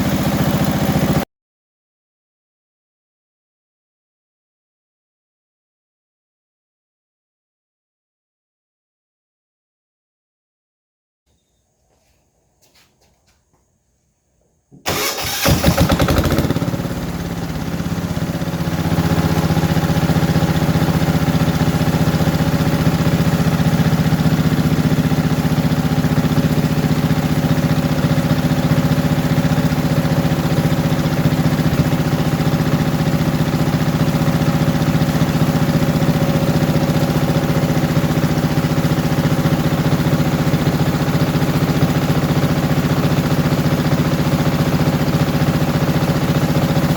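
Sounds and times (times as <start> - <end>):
diesel generator engine running: 0.0 - 1.2, 14.8 - 46.9.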